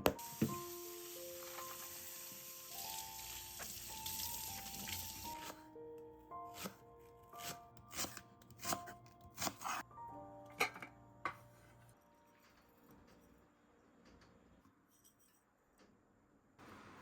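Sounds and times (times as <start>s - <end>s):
slow held melody music: 0.0s - 9.2s, 9.8s - 12.6s.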